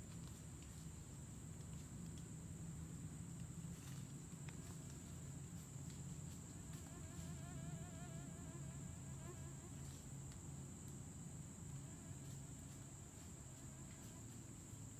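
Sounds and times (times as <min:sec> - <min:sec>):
flying insect buzzing: 0:06.3 - 0:10.2, 0:11.7 - 0:14.9.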